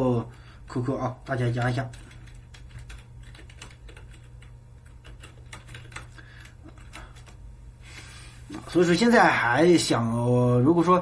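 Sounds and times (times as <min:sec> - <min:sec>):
computer keyboard key clicks: 0:01.9 - 0:07.4.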